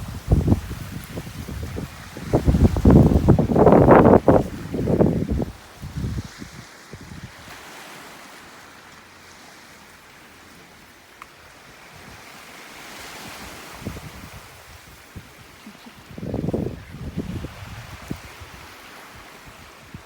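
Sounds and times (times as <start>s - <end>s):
wind buffeting the microphone: 0.0s - 7.7s, 11.8s - 12.3s, 12.9s - 20.0s
waves washing: 0.0s - 20.0s.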